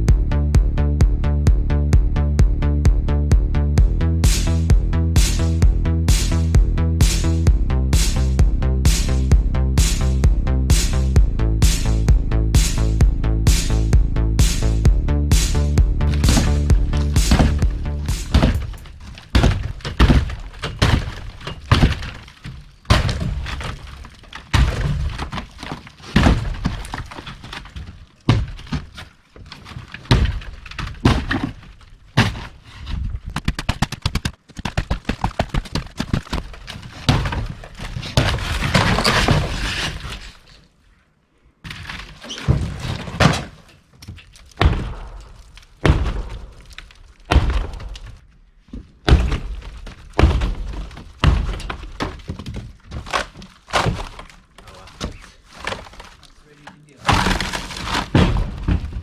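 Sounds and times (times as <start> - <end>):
wall panelling knocking and cracking: 16.0 - 40.5, 41.6 - 59.0
tearing and breaking: 41.7 - 48.3, 49.1 - 59.0.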